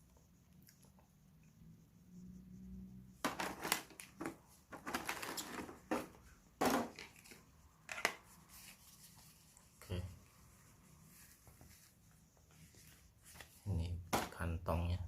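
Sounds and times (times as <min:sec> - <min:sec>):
packaging rustling and crinkling: 0:03.3 - 0:06.1.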